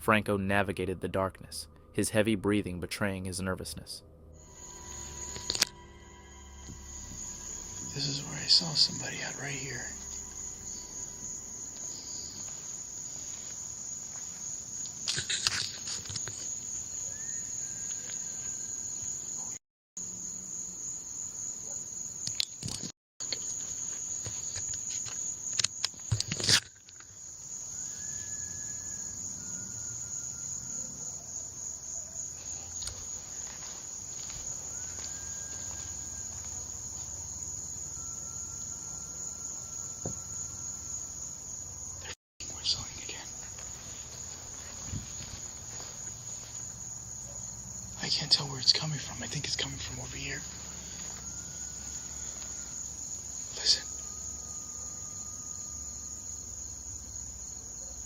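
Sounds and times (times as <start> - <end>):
crickets chirring: 4.4 - 58.0
faint short whistle-like tones: 17.0 - 18.8, 27.7 - 31.0.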